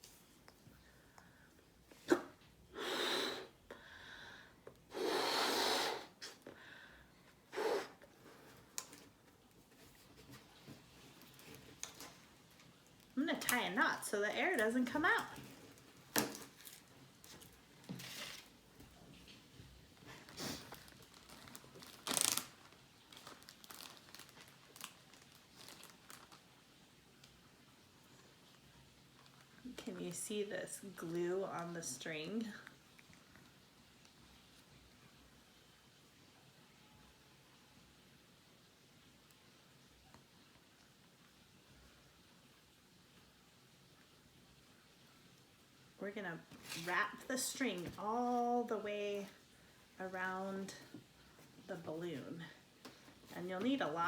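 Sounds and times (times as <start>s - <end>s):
breaths: 0.8s - 1.7s, 2.7s - 8.0s
person blowing into balloon: 2.1s - 3.6s, 4.9s - 6.4s, 7.5s - 8.2s
plastic bag crinkling: 10.5s - 19.2s, 20.0s - 27.3s, 46.5s - 49.6s.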